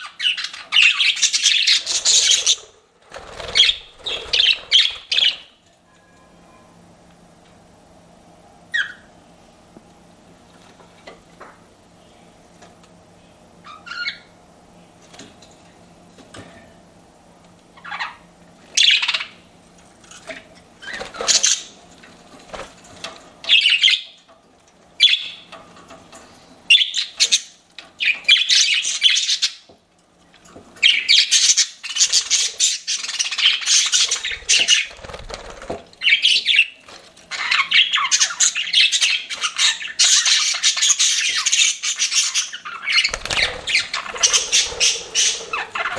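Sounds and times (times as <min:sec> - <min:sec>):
budgerigars chirping and warbling: 0:00.0 - 0:05.5, 0:13.7 - 0:14.3, 0:17.8 - 0:19.4, 0:20.4 - 0:21.7, 0:23.4 - 0:24.2, 0:25.0 - 0:25.5, 0:26.7 - 0:29.7, 0:30.8 - 0:45.9.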